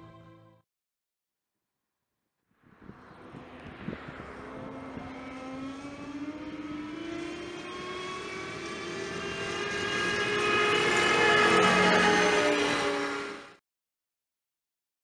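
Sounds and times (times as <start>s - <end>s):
high whine: 2.5s - 13.6s
diesel engine approaching: 2.6s - 13.6s.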